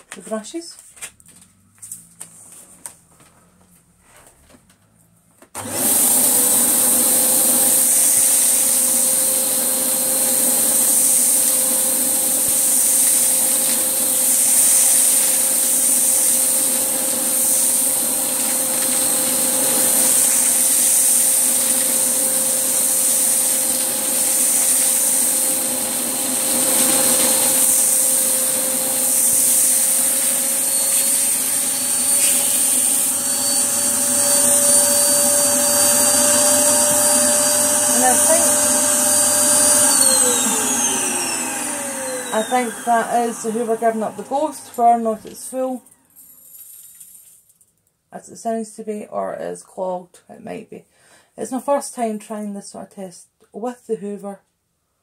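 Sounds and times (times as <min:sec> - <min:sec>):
vacuum cleaner running: 0:05.6 - 0:46.0.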